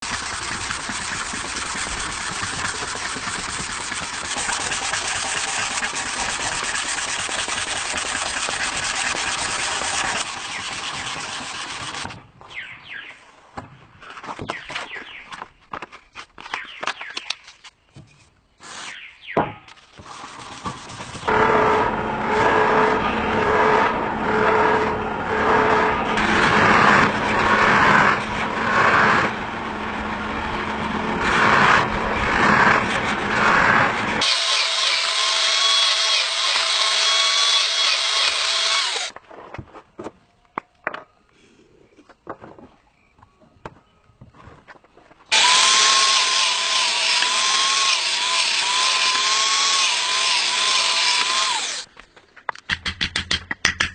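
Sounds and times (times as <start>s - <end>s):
power tools whining: 21.3s - 39.2s, 45.3s - 51.9s.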